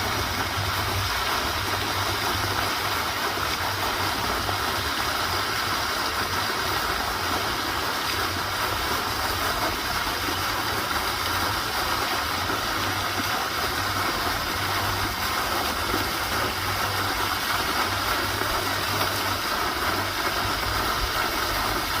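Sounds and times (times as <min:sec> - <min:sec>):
water rushing: 0:00.0 - 0:22.0.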